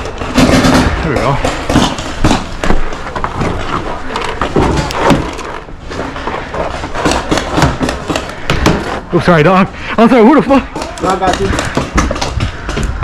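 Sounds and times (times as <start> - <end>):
balls striking cover: 6.8 - 8.9.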